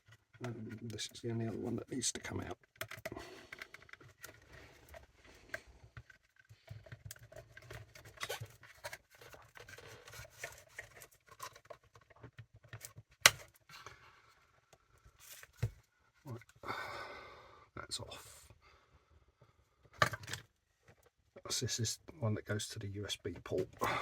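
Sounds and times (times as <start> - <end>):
small clicks and scratches: 0.0 - 16.5.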